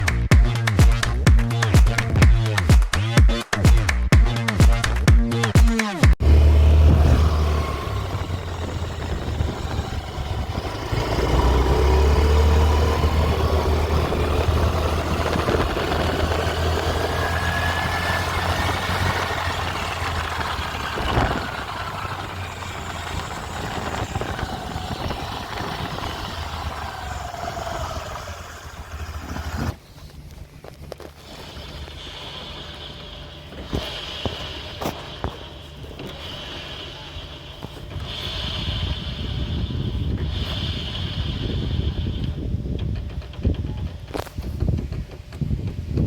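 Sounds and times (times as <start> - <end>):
motorcycle engine running: 0.0 - 46.0
metallic gear rubbing whine: 6.2 - 30.1.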